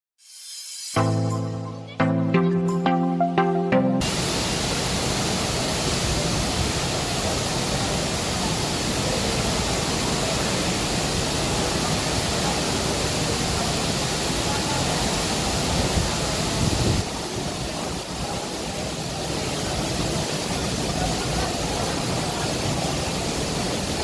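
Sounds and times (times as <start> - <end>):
music: 0.7 - 4.1
steady rain falling: 4.0 - 24.0.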